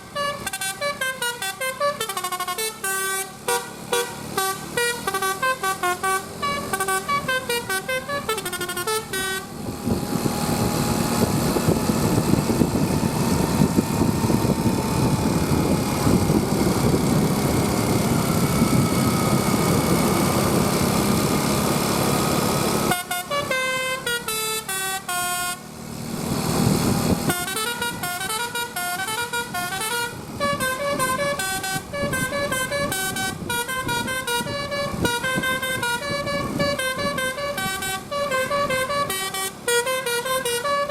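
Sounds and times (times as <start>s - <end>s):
musical bus horn tunes: 0.0s - 10.0s, 22.8s - 25.7s, 27.3s - 40.9s.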